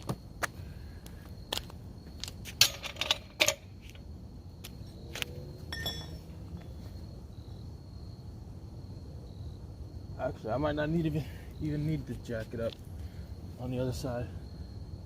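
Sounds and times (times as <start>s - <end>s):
high insect drone: 0.0s - 15.0s
metallic jingle: 5.7s - 6.2s.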